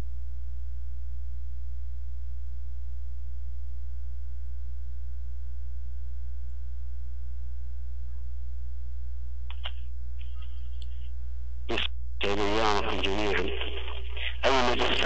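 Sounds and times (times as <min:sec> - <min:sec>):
low electrical hum: 0:00.0 - 0:15.0
faint voice: 0:11.7 - 0:15.0.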